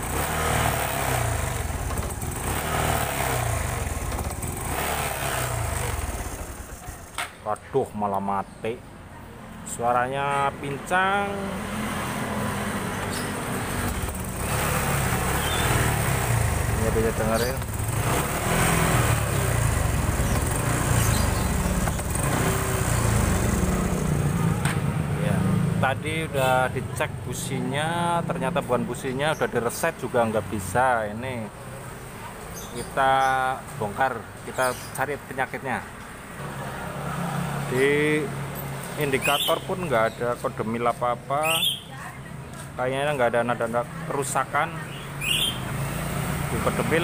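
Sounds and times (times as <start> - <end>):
motorcycle engine misfiring: 0.0 - 7.5, 13.0 - 24.9.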